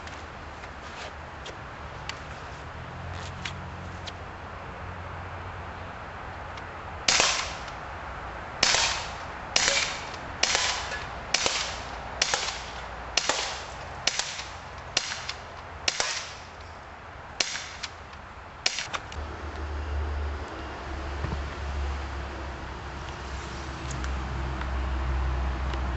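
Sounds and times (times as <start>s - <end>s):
bb pistol shots: 7.1s - 7.7s, 8.6s - 16.4s, 17.4s - 18.0s, 18.6s - 19.0s.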